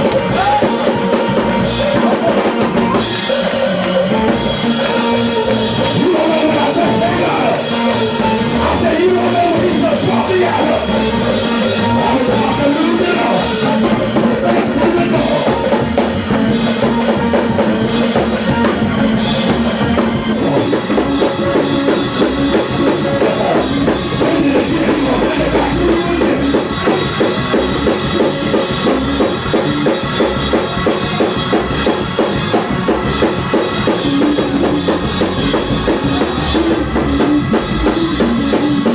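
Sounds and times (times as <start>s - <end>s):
church praise music: 0.0s - 38.9s
drum kit fast beat: 0.0s - 38.9s.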